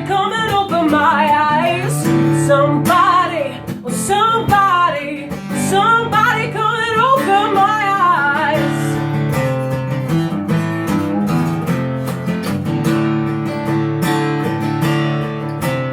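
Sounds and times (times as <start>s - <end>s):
person singing: 0.0s - 9.1s
strummed acoustic guitar: 0.0s - 15.9s.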